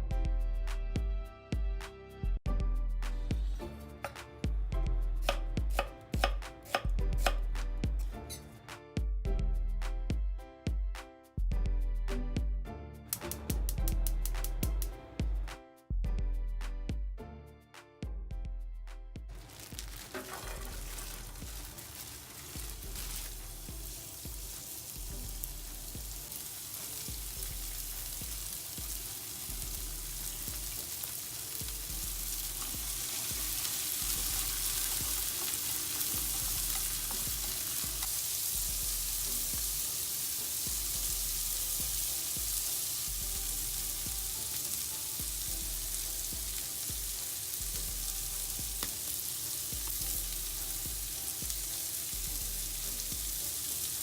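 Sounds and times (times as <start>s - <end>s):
food sizzling in a pan: 5.2s - 7.4s, 19.3s - 54.0s.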